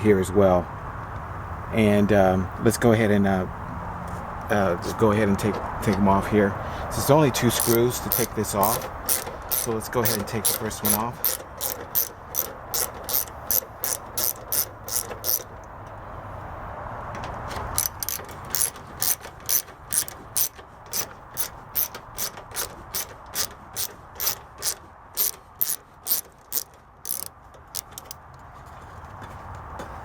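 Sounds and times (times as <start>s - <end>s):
hand ratchet clicking: 7.5s - 15.8s, 17.6s - 28.2s.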